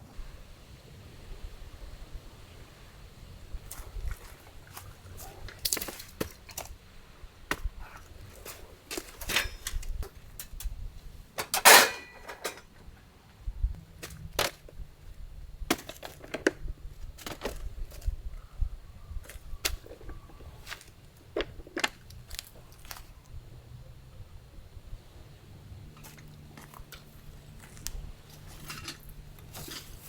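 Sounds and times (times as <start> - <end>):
cooking utensils clicking and knocking: 11.4 - 12.8.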